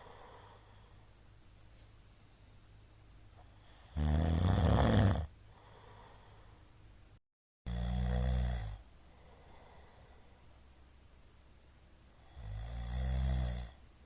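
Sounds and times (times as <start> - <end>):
man snoring loudly: 3.6 - 5.3, 7.7 - 8.8, 12.2 - 13.8.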